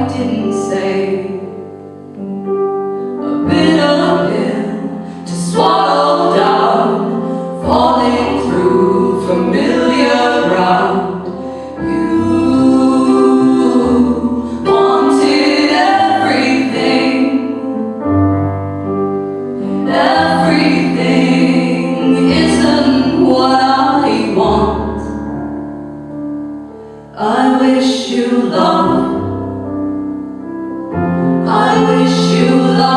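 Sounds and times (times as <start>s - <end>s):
female voices singing in harmony: 0.0s - 1.6s, 3.2s - 18.1s, 19.6s - 25.2s, 27.2s - 29.4s, 31.2s - 32.9s.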